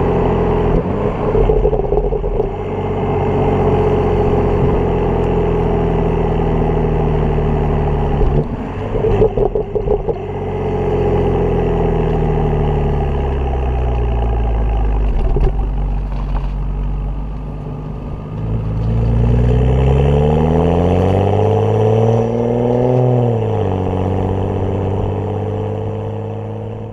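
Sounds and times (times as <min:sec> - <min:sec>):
exhaust crackles: 0:00.0 - 0:21.2
car engine running: 0:00.0 - 0:26.9.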